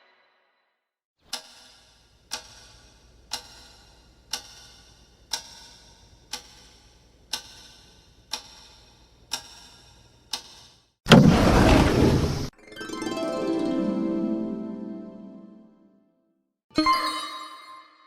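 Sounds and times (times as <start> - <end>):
clock ticking: 1.3 - 10.6.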